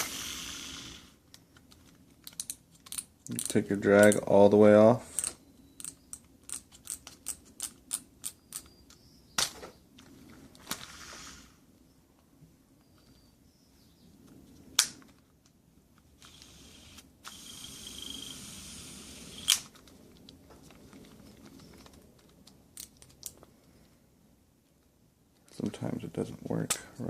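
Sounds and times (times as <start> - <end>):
fishing reel whirring: 16.2 - 19.6.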